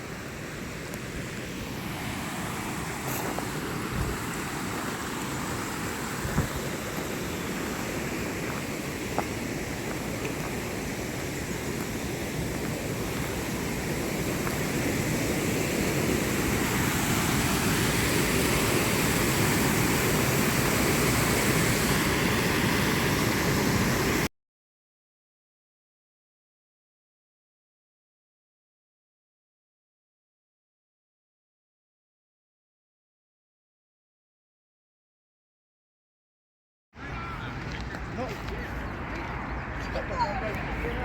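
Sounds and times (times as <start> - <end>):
waterfall rushing: 0.0 - 24.3.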